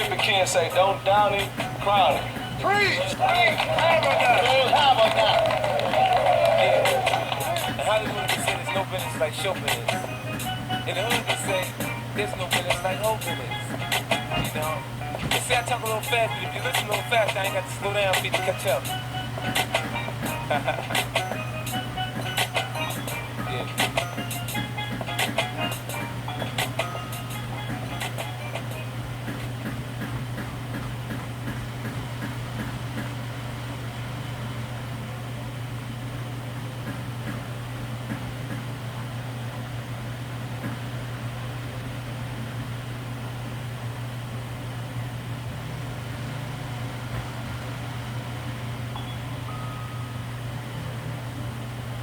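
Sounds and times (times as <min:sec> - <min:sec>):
low mechanical hum: 0:00.0 - 0:52.0.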